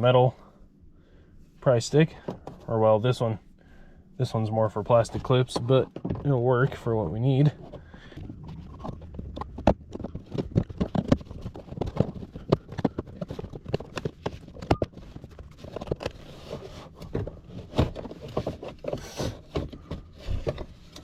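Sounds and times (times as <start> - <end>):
plastic clicks knocks and scrapes: 7.6 - 21.0.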